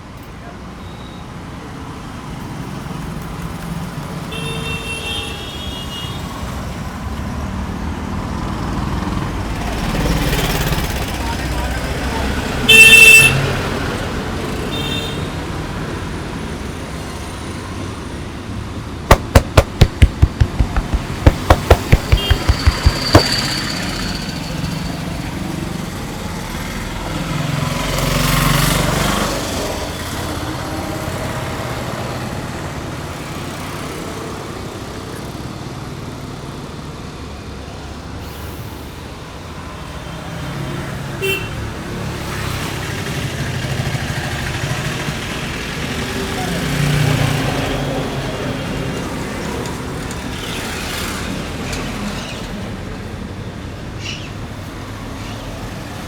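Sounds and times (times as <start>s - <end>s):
street traffic noise: 0.0s - 56.0s
hands slapping body: 19.1s - 23.4s.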